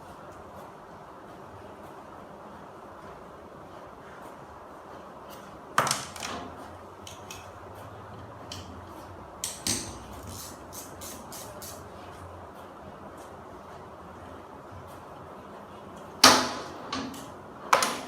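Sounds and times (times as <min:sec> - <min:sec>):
tools clanking and clicking: 0:05.3 - 0:07.5, 0:09.4 - 0:10.5, 0:16.2 - 0:18.0.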